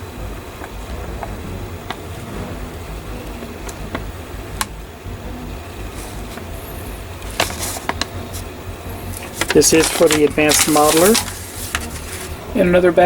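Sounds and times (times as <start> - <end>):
low background rumble: 0.0 - 13.0.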